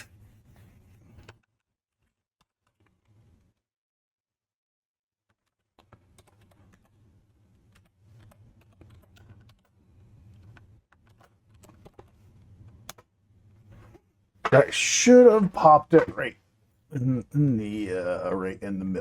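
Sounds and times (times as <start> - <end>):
keyboard typing: 5.3 - 6.9, 7.7 - 12.2.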